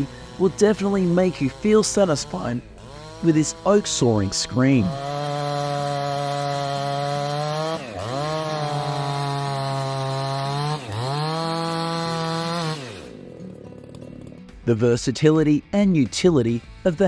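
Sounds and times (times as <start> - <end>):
chainsaw sawing wood: 0.0 - 14.8.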